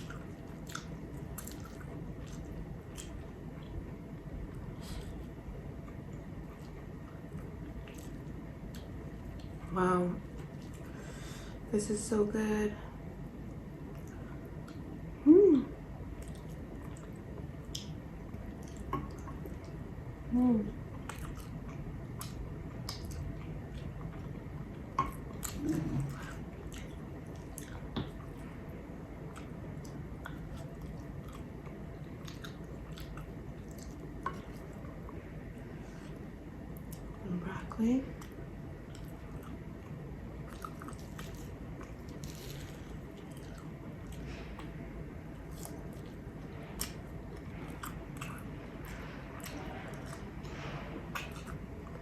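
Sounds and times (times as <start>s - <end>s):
person chewing food: 0.0s - 9.6s, 16.1s - 19.8s, 20.9s - 35.2s, 38.2s - 52.0s
low voiced hum: 0.0s - 52.0s.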